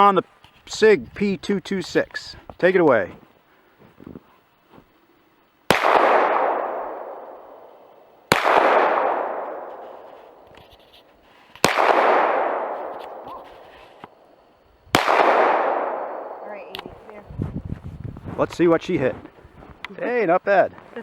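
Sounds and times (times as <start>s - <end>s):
pistol shots with echo: 5.7s - 10.4s, 11.6s - 13.3s, 14.9s - 16.4s.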